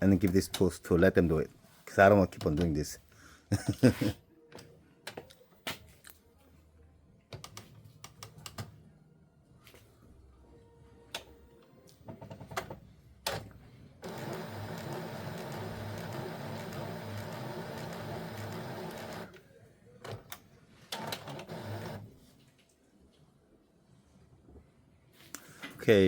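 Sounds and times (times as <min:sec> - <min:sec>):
printer mechanism whirring: 0:14.0 - 0:19.4, 0:20.9 - 0:22.0.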